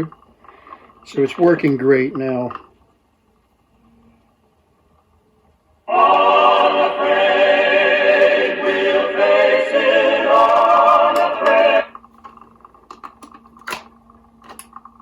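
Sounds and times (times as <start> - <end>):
faint hum: 0.0 - 15.0
choral singing from a record: 5.9 - 12.1.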